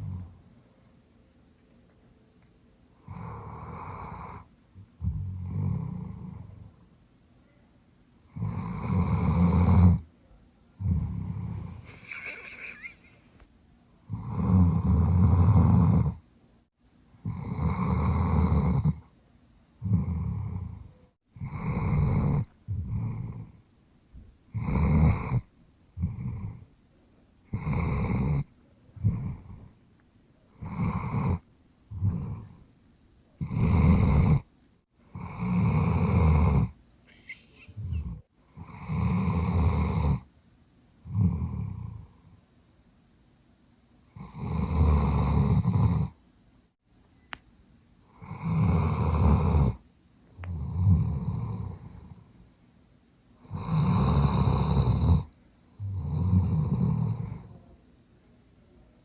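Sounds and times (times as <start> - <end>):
dog snoring loudly: 0.0 - 0.3, 3.0 - 6.7, 8.3 - 10.0, 10.8 - 11.9, 14.1 - 16.2, 17.2 - 19.0, 19.8 - 23.6, 24.5 - 26.6, 27.5 - 29.7, 30.6 - 32.6, 33.4 - 34.5, 35.1 - 36.8, 37.8 - 40.3, 41.1 - 42.2, 44.2 - 46.2, 48.1 - 49.8, 50.4 - 52.2, 53.4 - 57.5.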